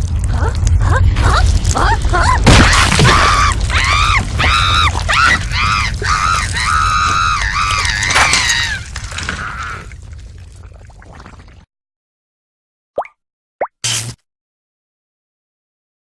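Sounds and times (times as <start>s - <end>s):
crash: 2.4s - 5.1s.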